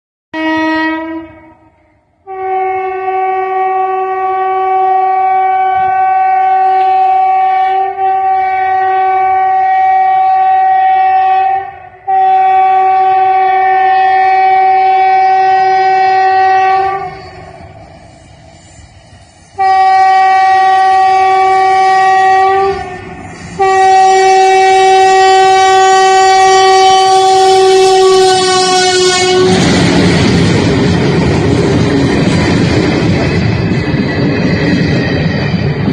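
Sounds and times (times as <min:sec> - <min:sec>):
locomotive horn blasts: 0:00.4 - 0:18.0, 0:19.5 - 0:29.8
train rushing past: 0:01.6 - 0:35.9.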